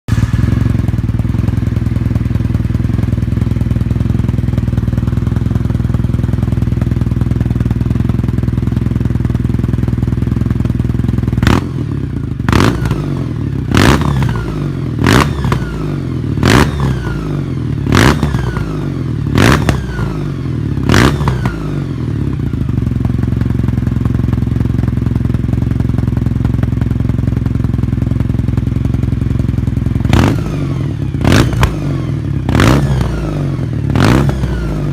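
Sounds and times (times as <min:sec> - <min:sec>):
motorcycle engine idling: 0:00.1 - 0:34.9
motorcycle throttle blips: 0:00.1 - 0:34.9.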